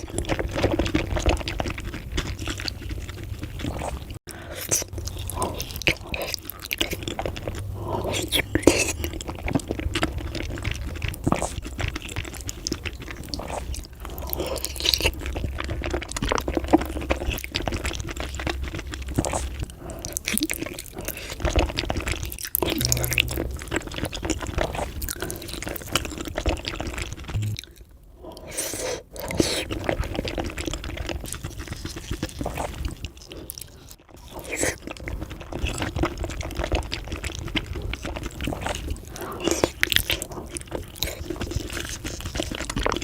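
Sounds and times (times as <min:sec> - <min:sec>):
wet chewing: 0:00.0 - 0:43.0
sticky mouth clicks: 0:22.6 - 0:23.8, 0:27.3 - 0:27.6.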